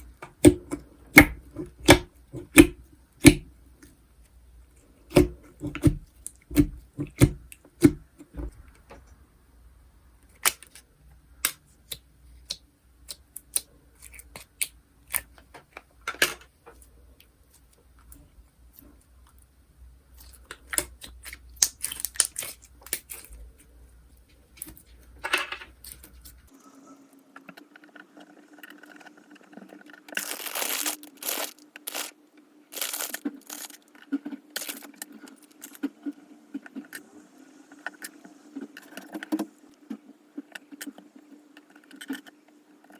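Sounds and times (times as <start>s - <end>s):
slime crackling bursts: 30.1s - 33.9s.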